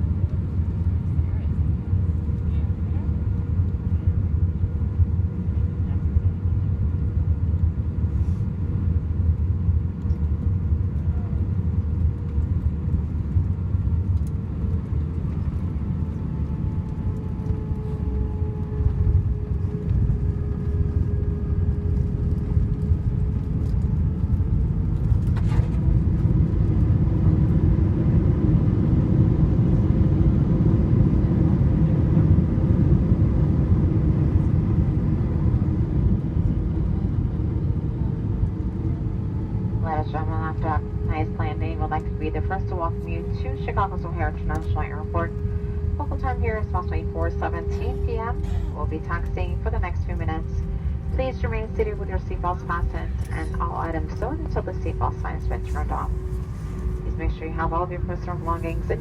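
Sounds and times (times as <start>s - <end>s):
airplane cabin engine rumble: 0.0s - 59.0s
reverse thrust roar: 14.8s - 59.0s.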